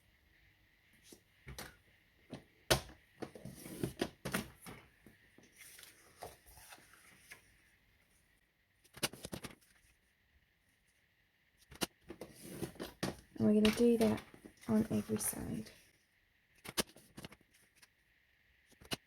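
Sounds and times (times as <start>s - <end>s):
paper handling and taps: 8.9s - 9.8s, 11.6s - 15.6s, 16.6s - 17.9s
scoring tool scraping card: 11.7s - 12.9s.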